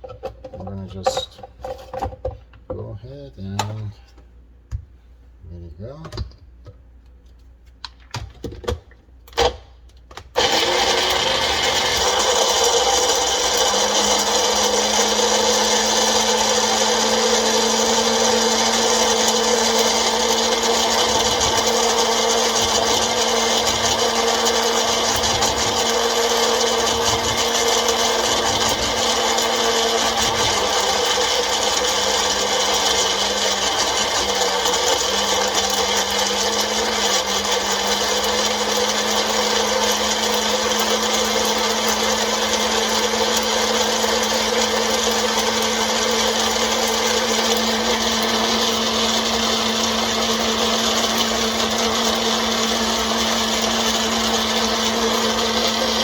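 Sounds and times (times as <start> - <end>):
electric blender running: 10.4 - 56.0.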